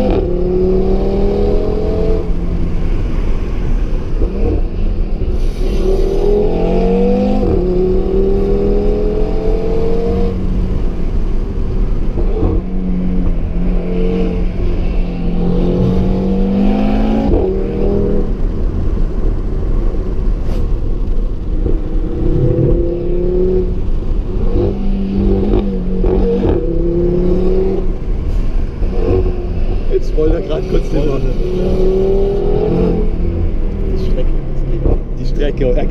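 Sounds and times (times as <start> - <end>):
car engine accelerating: 0.0 - 35.9.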